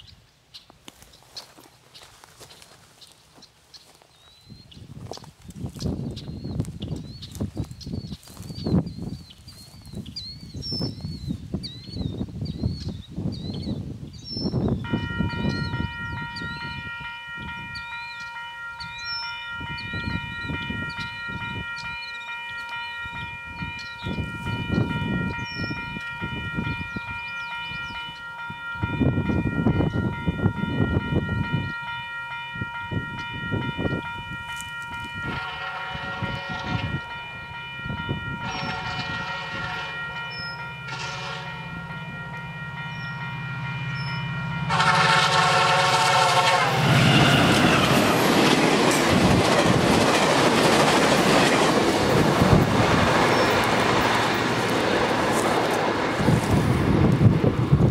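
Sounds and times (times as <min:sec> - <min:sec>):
wind gusting on microphone: 0:04.4 - 0:18.0, 0:18.6 - 0:22.1, 0:22.9 - 0:42.2, 0:42.8 - 0:57.9
faint high ringing tone: 0:14.8 - 0:44.7
locomotive air horn blasts: 0:14.8 - 0:48.1
train rumble: 0:14.8 - 0:57.9.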